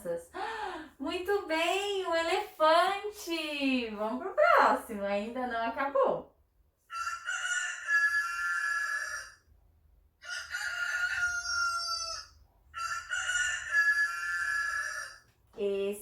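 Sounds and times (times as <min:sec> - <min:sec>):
rooster crowing: 0:06.9 - 0:09.5, 0:10.2 - 0:15.3.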